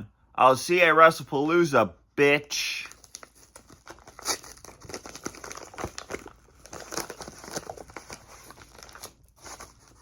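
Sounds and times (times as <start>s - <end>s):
packaging crinkling: 2.8s - 10.0s.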